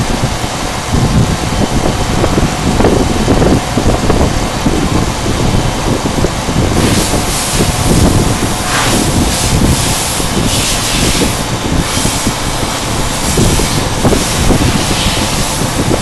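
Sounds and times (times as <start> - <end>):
milling machine cutting plastic: 6.5 - 16.0
bright hiss: 6.8 - 16.0.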